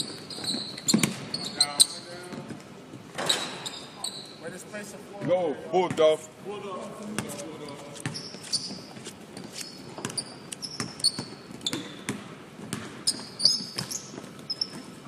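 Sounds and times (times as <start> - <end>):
basketballs bouncing on hardwood: 0.0 - 1.5, 8.0 - 15.0
sneakers squeaking on floor: 0.0 - 4.5, 7.0 - 15.0.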